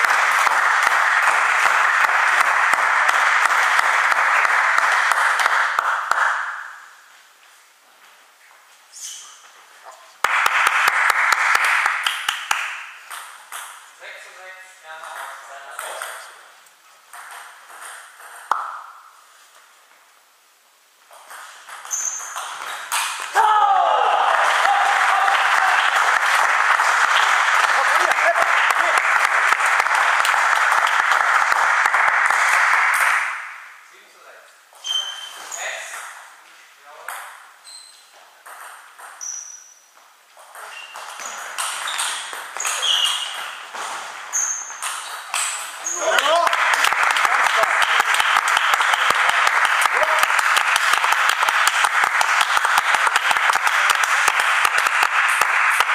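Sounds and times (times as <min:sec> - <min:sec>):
faint hall background noise: 0:00.0 - 0:55.9
short high squeaks: 0:08.9 - 0:09.4, 0:21.8 - 0:22.8, 0:34.8 - 0:35.9, 0:37.6 - 0:38.2, 0:39.0 - 0:39.9, 0:40.6 - 0:43.6, 0:44.3 - 0:46.2.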